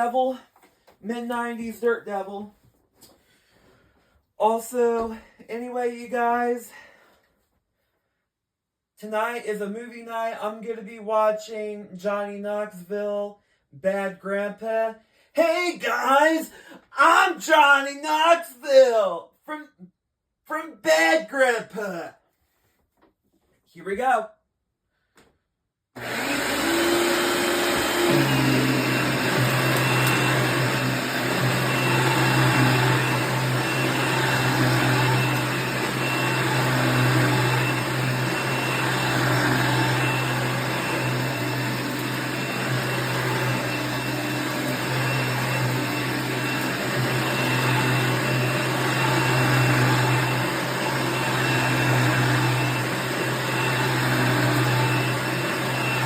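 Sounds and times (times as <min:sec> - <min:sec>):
upright vacuum cleaner running: 0:26.0 - 0:56.0.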